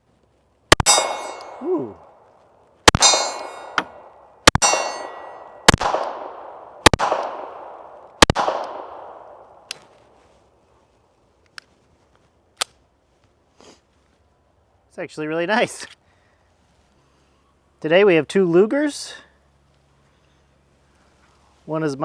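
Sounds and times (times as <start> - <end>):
pistol shots: 0.7 - 1.6, 2.9 - 9.8
metallic clang ringing: 0.8 - 1.9, 2.9 - 5.7.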